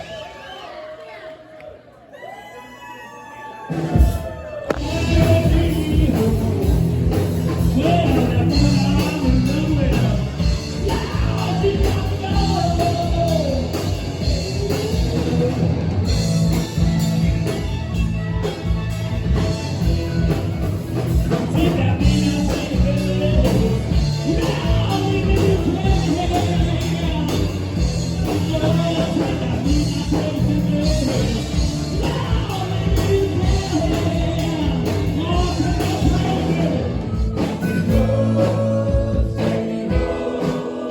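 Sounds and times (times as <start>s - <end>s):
guitar: 3.7s - 40.9s
steady drum beat: 3.9s - 40.9s
person singing: 4.7s - 16.0s, 21.2s - 40.9s.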